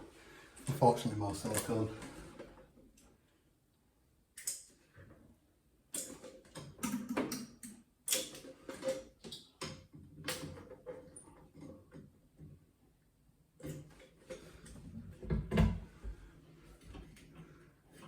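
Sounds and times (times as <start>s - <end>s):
clicks and knocks on pipe fittings: 4.4s - 5.2s, 5.9s - 12.6s.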